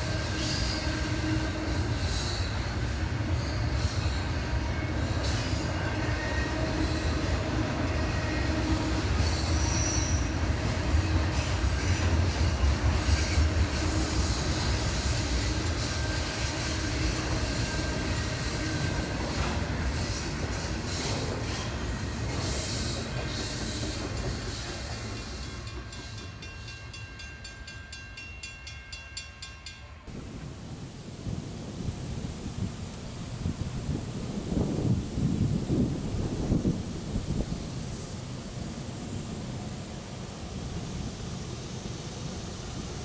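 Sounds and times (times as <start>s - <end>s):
train wheel squeal: 0.0s - 30.8s
train wheels clacking: 0.0s - 30.8s
freight train rumble: 0.0s - 43.0s.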